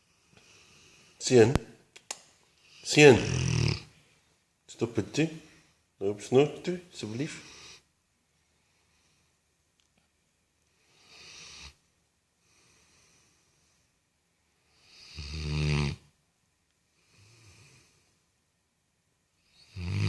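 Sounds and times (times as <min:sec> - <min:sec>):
dog snoring: 0:02.8 - 0:03.9, 0:10.8 - 0:11.8, 0:14.7 - 0:16.1, 0:19.4 - 0:20.0.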